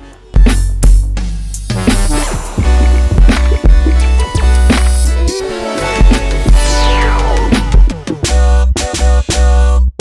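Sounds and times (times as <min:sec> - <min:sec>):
hip-hop music with heavy bass: 0:00.0 - 0:10.0.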